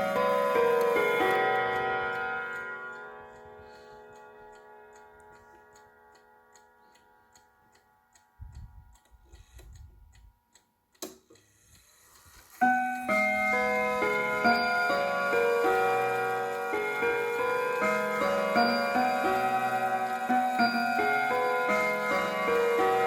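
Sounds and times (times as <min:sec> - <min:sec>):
clock chime: 0:00.0 - 0:06.9, 0:12.4 - 0:23.0
clock ticking: 0:00.0 - 0:23.0.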